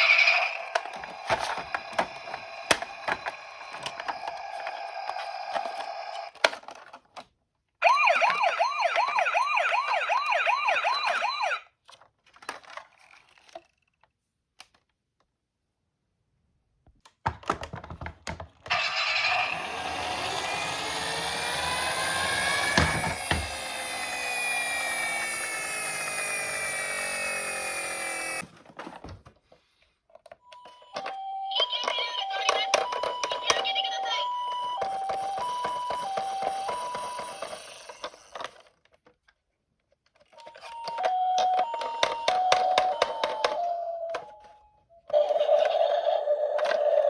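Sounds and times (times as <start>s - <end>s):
toy siren warbling: 0.0s - 6.4s, 7.8s - 11.6s, 18.7s - 28.4s, 30.5s - 38.5s, 40.4s - 47.0s
rushing whirring sound: 18.7s - 28.4s.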